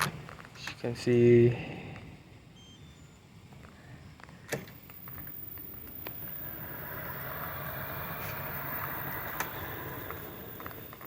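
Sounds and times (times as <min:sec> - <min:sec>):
scooter motor and tire hum: 0:04.3 - 0:11.0.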